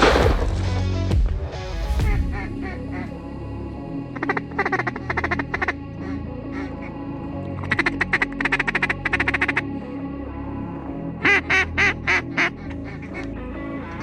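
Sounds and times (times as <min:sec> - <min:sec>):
background music: 0:00.0 - 0:14.0
duck quacking: 0:04.2 - 0:06.9, 0:07.6 - 0:09.7, 0:11.2 - 0:13.3.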